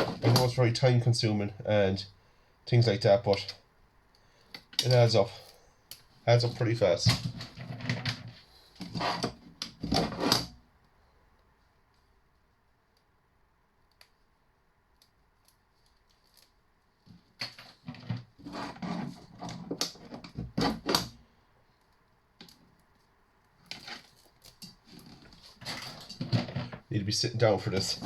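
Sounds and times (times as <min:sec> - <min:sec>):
copper wire and tools clattering: 0:00.0 - 0:00.6, 0:23.6 - 0:26.9.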